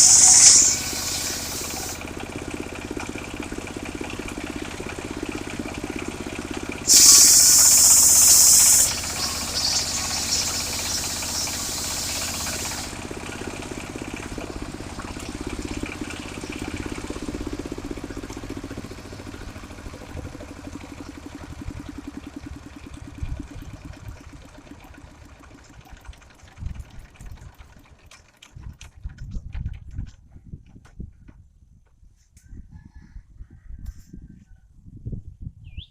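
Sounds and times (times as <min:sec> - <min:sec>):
loud high-pitched hiss: 0:00.0 - 0:02.0, 0:06.9 - 0:13.0
sawmill engine running: 0:00.0 - 0:30.0.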